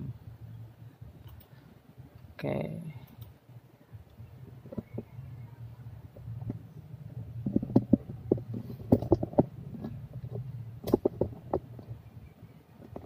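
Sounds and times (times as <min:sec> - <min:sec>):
steady low hum: 0:00.0 - 0:13.0
computer mouse clicks: 0:01.2 - 0:01.6.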